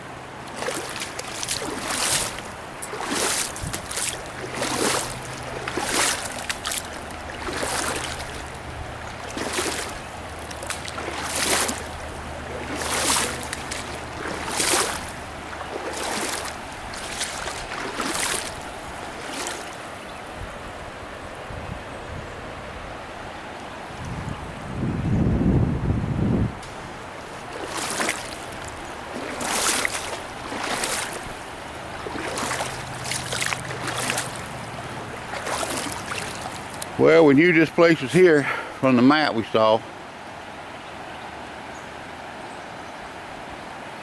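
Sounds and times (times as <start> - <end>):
paddle swishing through water: 0.0 - 24.0, 26.5 - 39.7
river rushing: 0.0 - 25.3, 26.5 - 44.0.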